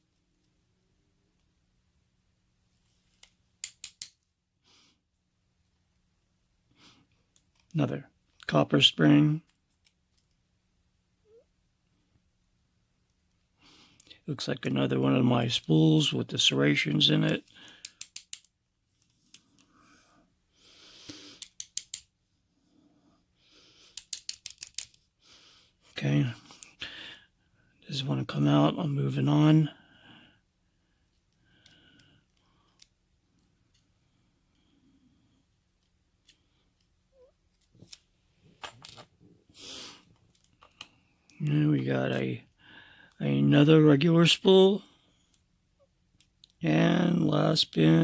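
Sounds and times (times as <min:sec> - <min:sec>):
tweezers clicking on metal pins: 0:03.6 - 0:04.2, 0:17.8 - 0:18.5, 0:21.4 - 0:22.1, 0:24.0 - 0:24.9.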